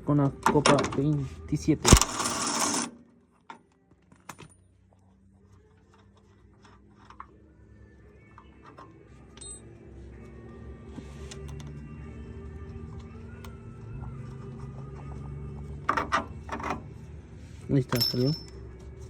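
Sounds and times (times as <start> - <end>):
tools clinking on metal: 17.8 - 18.7.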